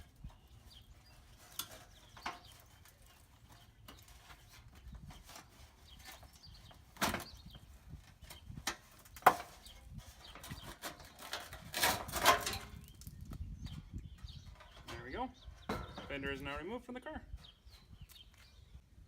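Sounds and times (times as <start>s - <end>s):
panel scraping rattle: 8.4s - 12.8s.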